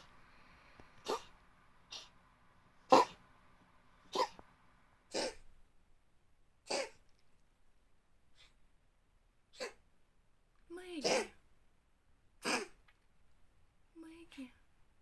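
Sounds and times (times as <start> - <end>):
cat coughing: 1.0 - 2.1, 2.9 - 3.2, 4.1 - 4.4, 5.1 - 5.5, 6.6 - 7.0, 9.6 - 9.8, 11.0 - 11.4, 12.4 - 12.8.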